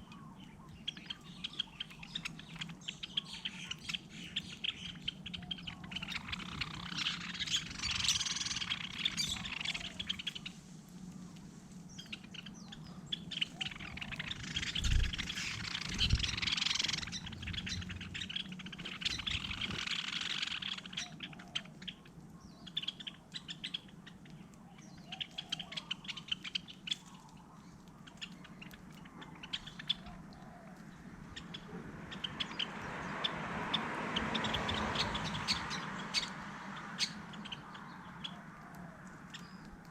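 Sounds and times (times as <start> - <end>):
birds chirping and twittering: 0.0 - 39.9.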